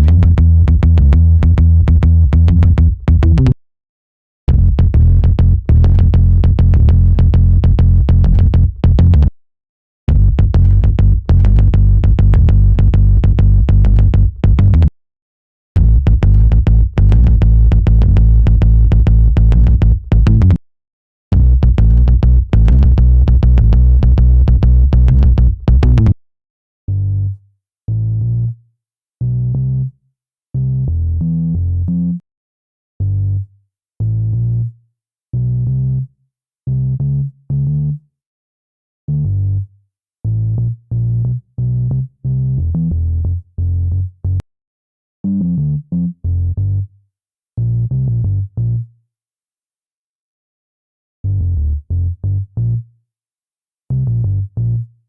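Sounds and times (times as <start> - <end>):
low bass line notes: 0.0 - 3.6, 4.5 - 9.3, 10.1 - 14.9, 15.8 - 20.6, 21.3 - 26.2, 26.9 - 28.6, 29.2 - 29.9, 30.6 - 32.2, 33.0 - 34.8, 35.4 - 36.1, 39.1 - 44.4, 45.3 - 46.9, 47.6 - 48.9, 51.2 - 52.9, 53.9 - 54.9.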